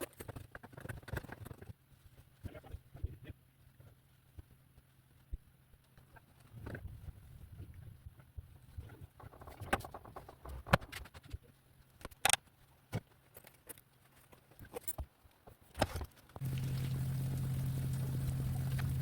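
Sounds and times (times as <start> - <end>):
objects clicking and knocking: 8.8 - 16.5
faint low hum: 16.4 - 19.0.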